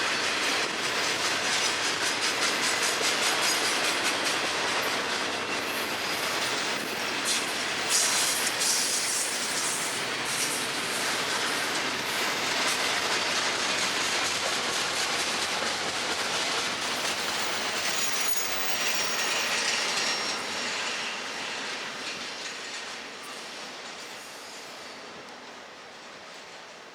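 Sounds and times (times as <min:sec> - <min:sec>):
train wheels clacking over rails: 0:00.0 - 0:26.9
high wheel squeal: 0:17.0 - 0:21.7.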